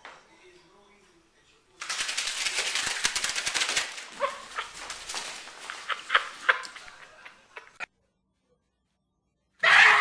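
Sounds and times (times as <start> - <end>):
animal crying: 9.6 - 10.0.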